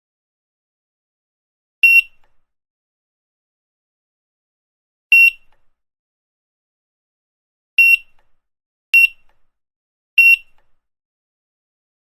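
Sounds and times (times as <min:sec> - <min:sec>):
barcode scanner beeps: 0:01.8 - 0:02.2, 0:05.1 - 0:05.5, 0:07.8 - 0:08.1, 0:09.0 - 0:09.2, 0:10.2 - 0:10.6.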